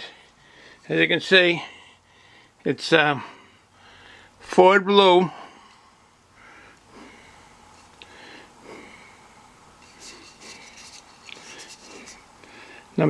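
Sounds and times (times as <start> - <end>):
soft rustling: 9.8 - 12.3.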